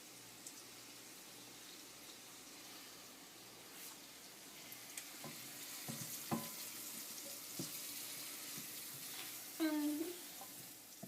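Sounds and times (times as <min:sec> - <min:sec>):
onions sizzling in oil: 0:00.0 - 0:11.0
spoon knocking against pan: 0:05.2 - 0:06.6.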